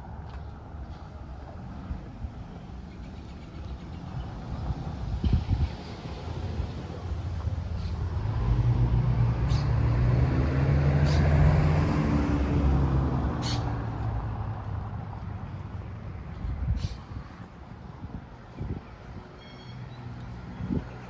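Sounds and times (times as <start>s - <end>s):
vehicle engine passing by: 3.7s - 17.4s.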